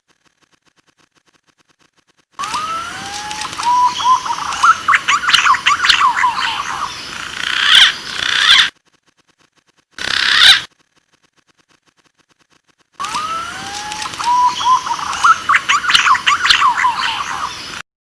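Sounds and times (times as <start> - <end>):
pigeon whistling song: 2.4 - 6.9, 13.0 - 17.6.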